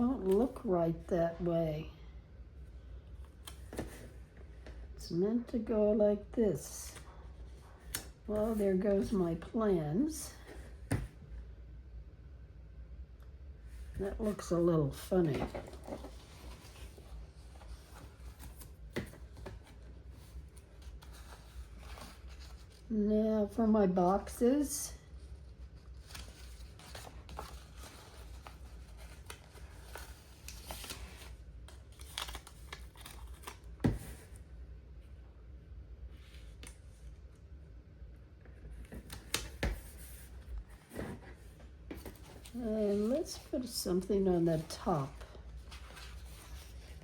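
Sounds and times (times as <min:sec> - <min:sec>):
low room hum: 0:00.0 - 0:47.0
paper pages rustling: 0:14.0 - 0:22.9, 0:25.8 - 0:34.3, 0:38.8 - 0:43.8, 0:44.5 - 0:47.0.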